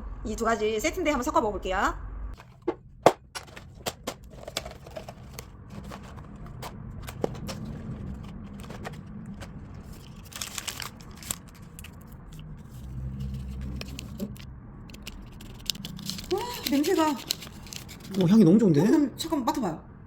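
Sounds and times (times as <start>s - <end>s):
packaging rustling and tearing: 3.4s - 18.4s.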